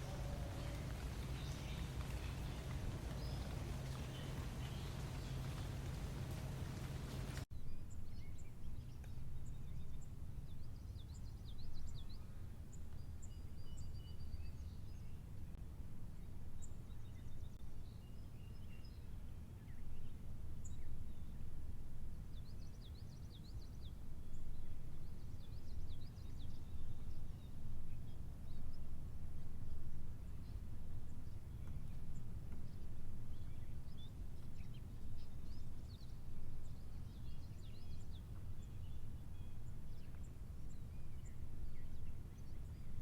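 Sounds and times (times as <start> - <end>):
small birds chirping: 0.0 - 7.4
steady low rumble: 0.0 - 7.5.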